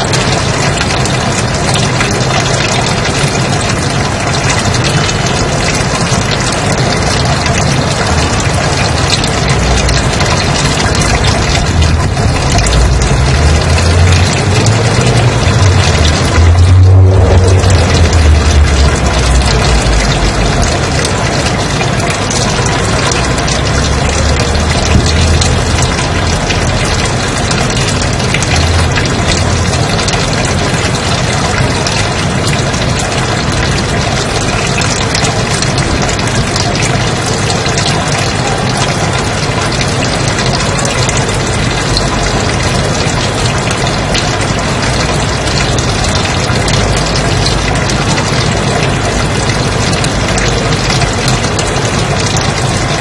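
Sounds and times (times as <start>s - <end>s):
low rumble: 8.1s - 24.0s.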